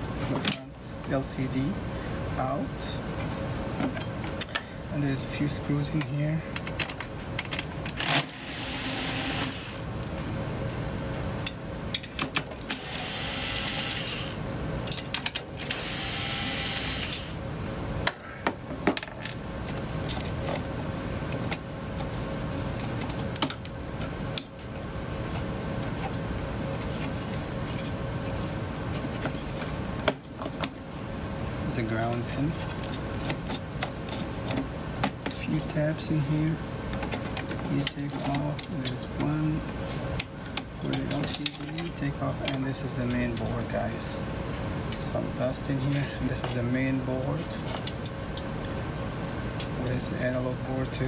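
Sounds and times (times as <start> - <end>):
electric screwdriver running: 8.0 - 9.8, 12.7 - 14.4, 15.6 - 17.4
screws and parts clattering: 40.8 - 42.6.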